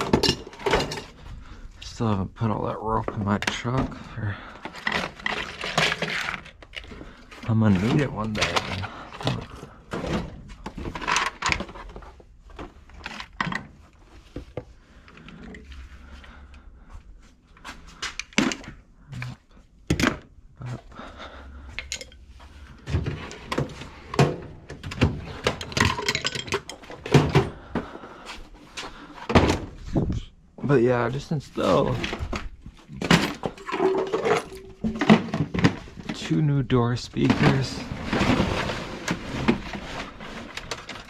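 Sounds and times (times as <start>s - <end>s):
hard objects knocking and clattering: 0.0s - 1.5s, 3.0s - 15.7s, 21.6s - 28.0s, 29.2s - 30.1s, 31.8s - 36.4s.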